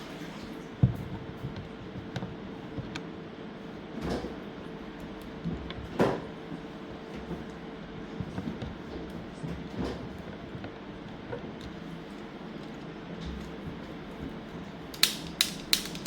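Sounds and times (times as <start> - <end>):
controller clicks and knocks: 15.0 - 16.0.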